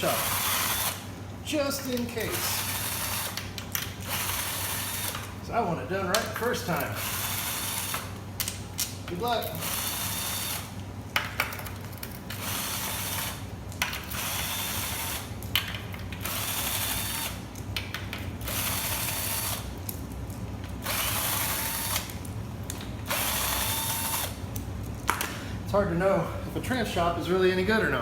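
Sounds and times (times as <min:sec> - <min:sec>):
cordless power tool whining: 0:00.0 - 0:01.0, 0:04.1 - 0:05.3, 0:07.0 - 0:08.1, 0:09.5 - 0:10.7, 0:12.3 - 0:13.4, 0:14.1 - 0:15.3, 0:20.8 - 0:22.1, 0:23.1 - 0:24.4.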